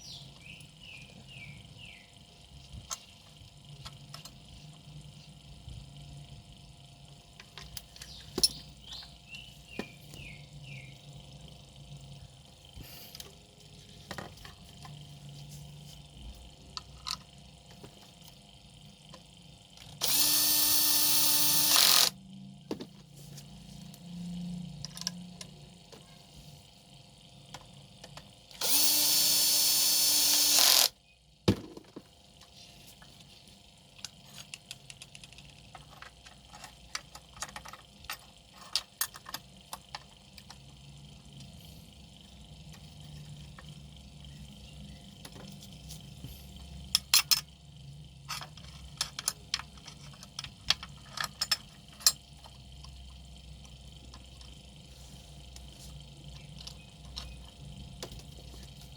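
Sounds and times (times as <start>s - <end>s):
power tool motor running: 20.0s - 22.2s, 28.6s - 31.0s.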